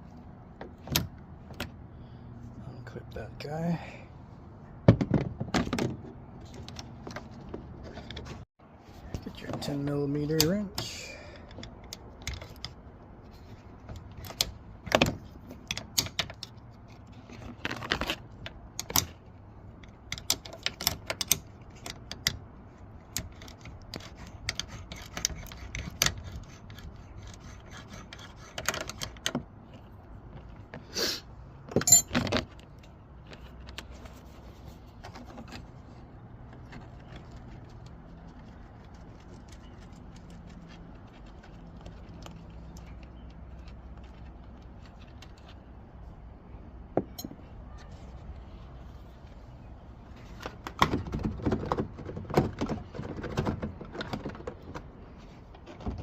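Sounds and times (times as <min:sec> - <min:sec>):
wrench clinking on metal bolts: 0:31.8 - 0:32.2.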